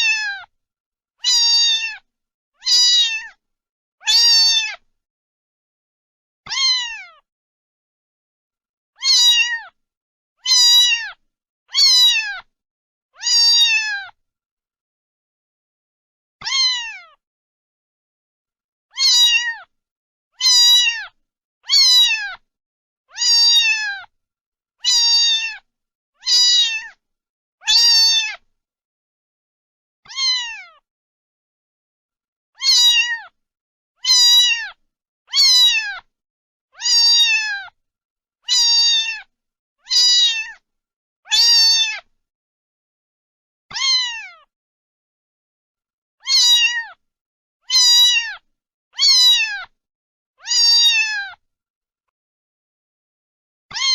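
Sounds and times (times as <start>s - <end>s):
cat meowing: 0.0s - 0.5s, 1.2s - 3.4s, 4.0s - 4.8s, 6.5s - 7.2s, 9.0s - 9.8s, 10.4s - 12.5s, 13.2s - 14.2s, 16.4s - 17.2s, 18.9s - 19.7s, 20.4s - 22.4s, 23.1s - 24.1s, 24.8s - 27.0s, 27.6s - 28.5s, 30.0s - 30.8s, 32.6s - 33.4s, 34.0s - 36.1s, 36.8s - 37.8s, 38.4s - 40.6s, 41.3s - 42.1s, 43.7s - 44.5s, 46.2s - 47.0s, 47.6s - 49.8s, 50.4s - 51.4s.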